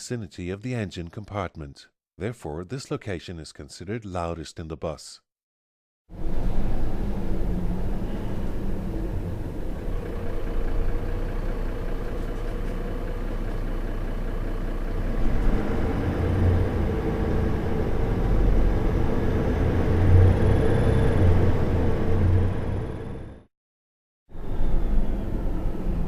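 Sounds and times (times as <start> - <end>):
bus engine: 6.2 - 23.5, 24.4 - 26.0.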